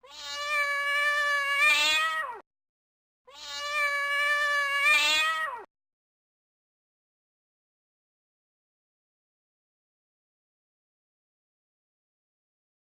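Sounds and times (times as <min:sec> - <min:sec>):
cat meowing: 0:00.0 - 0:02.4, 0:03.3 - 0:05.7.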